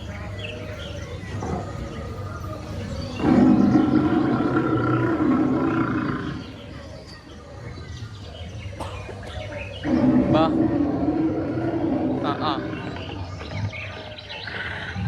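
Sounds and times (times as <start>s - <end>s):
crowd background: 0.0s - 15.0s
deep animal roar over loudspeaker: 1.3s - 6.8s, 9.8s - 15.0s.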